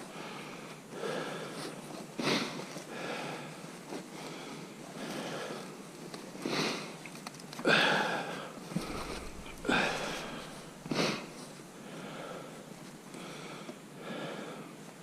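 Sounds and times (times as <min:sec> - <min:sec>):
person breathing hard: 0:00.0 - 0:01.8, 0:02.9 - 0:05.8, 0:07.7 - 0:14.8.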